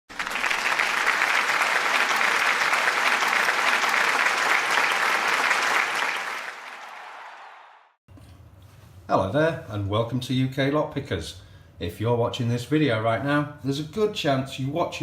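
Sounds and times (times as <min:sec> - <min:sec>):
crowd applause: 0:00.1 - 0:08.0.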